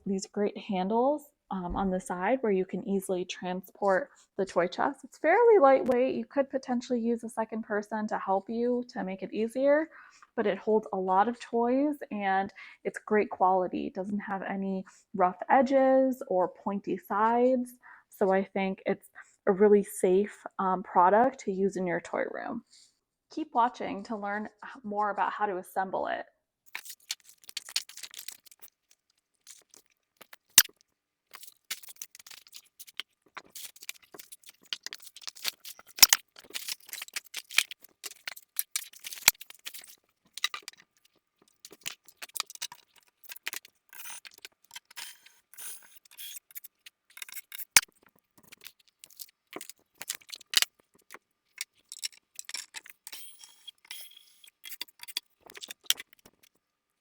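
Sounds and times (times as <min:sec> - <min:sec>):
wooden parts clicking and knocking: 0:26.7 - 0:28.8, 0:29.4 - 0:56.5
packaging rustling and crinkling: 0:26.7 - 0:56.5
small hard parts clattering: 0:26.7 - 0:56.5.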